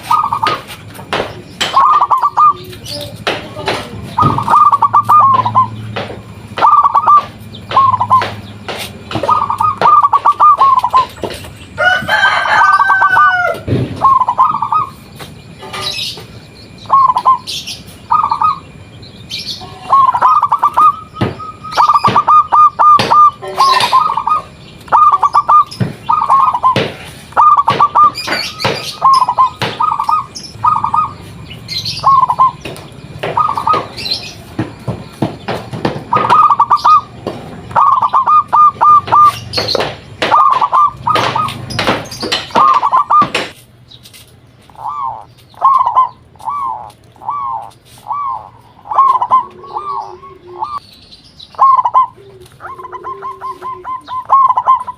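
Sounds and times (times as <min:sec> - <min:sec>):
doves cooing trills: 0:00.0 - 0:43.6, 0:44.6 - 0:50.8, 0:51.5 - 0:54.9
rooster crowing: 0:11.7 - 0:14.4.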